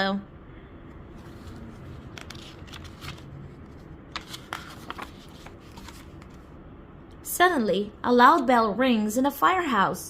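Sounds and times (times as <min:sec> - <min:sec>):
paper rustling: 0:01.1 - 0:06.5.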